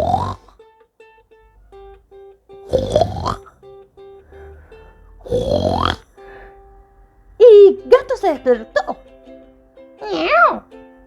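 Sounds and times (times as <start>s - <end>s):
person imitating snoring: 0.0s - 0.5s, 2.7s - 3.5s, 5.2s - 6.0s
soft plucked-string music: 0.0s - 11.0s.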